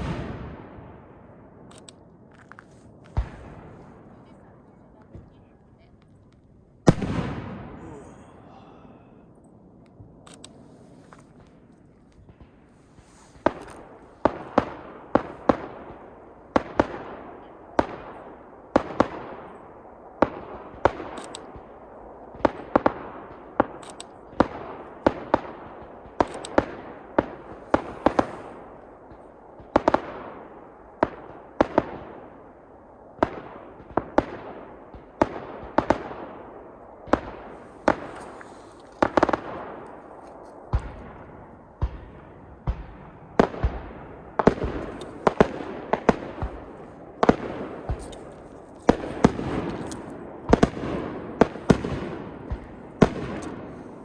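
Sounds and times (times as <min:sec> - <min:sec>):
firework shells bursting: 0:44.4 - 0:54.0.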